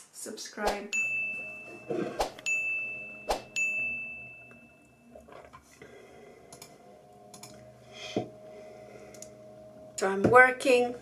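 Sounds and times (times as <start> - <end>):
bell-like ding: 0.9 - 5.2
faint clicks: 6.5 - 7.6.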